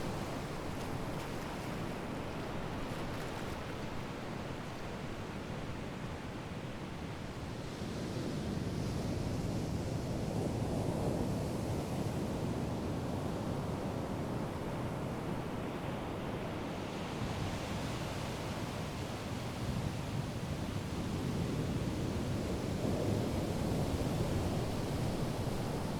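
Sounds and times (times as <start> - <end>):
waves washing onto shore: 0.0 - 5.8.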